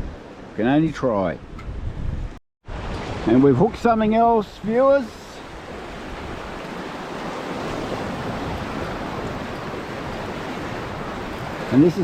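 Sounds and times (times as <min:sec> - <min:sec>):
ocean surf washing: 0:00.0 - 0:12.0
wind on microphone: 0:01.4 - 0:03.3, 0:05.4 - 0:12.0.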